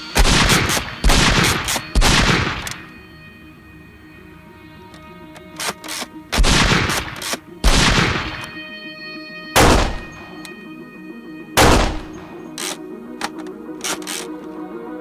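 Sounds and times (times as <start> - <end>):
background music with held tones: 0.0 - 15.0
loud gunshot-like bangs: 0.2 - 2.7, 6.4 - 8.4, 9.6 - 10.2, 11.6 - 12.2.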